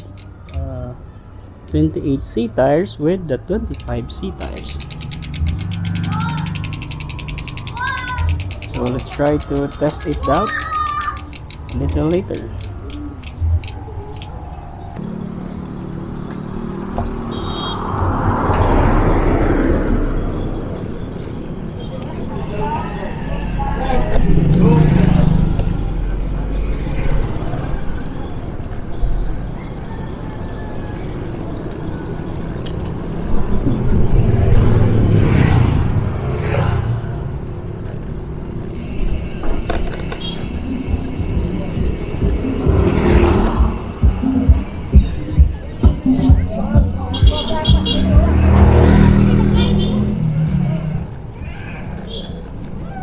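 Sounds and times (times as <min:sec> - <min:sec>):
traffic rumble: 0:00.0 - 0:53.0
vehicle passing by: 0:12.0 - 0:21.5, 0:31.2 - 0:38.0, 0:40.9 - 0:51.4.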